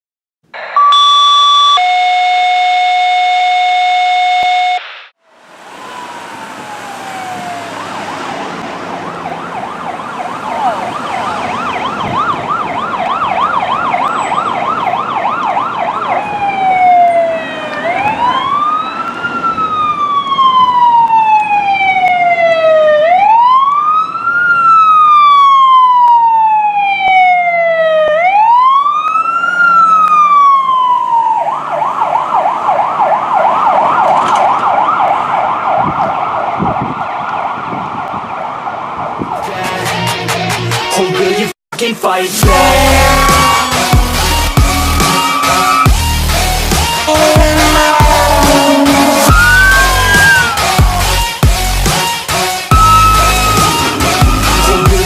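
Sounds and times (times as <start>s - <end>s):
electronic siren: 0.5s - 39.7s, 42.4s - 55.0s
steady tone: 42.4s - 51.8s, 52.7s - 55.0s.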